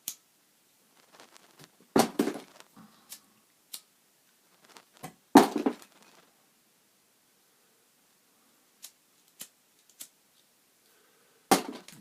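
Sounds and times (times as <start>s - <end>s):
plastic lighters clicking: 8.8s - 10.1s.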